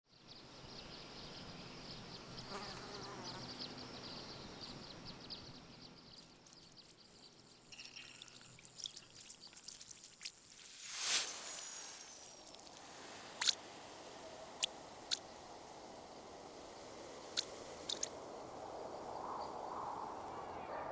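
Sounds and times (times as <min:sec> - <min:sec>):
insects chirping: 0:06.1 - 0:20.2
small clicks and ticks: 0:17.3 - 0:18.2.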